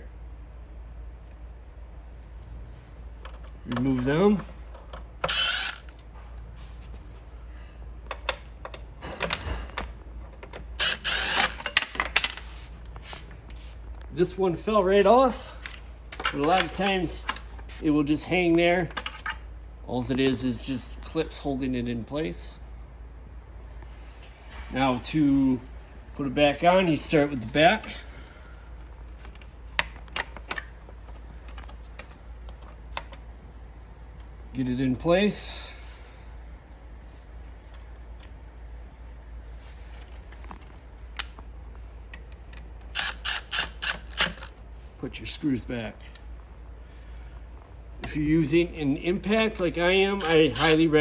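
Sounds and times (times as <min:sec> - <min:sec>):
cordless impact driver running: 0:05.2 - 0:06.0, 0:10.8 - 0:11.9, 0:43.0 - 0:44.6, 0:50.1 - 0:50.9.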